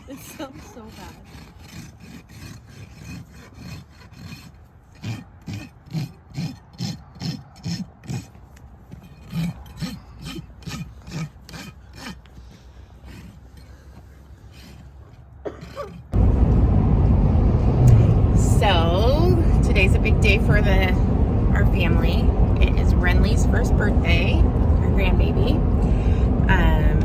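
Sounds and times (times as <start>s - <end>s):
donkey braying: 0.0s - 16.2s.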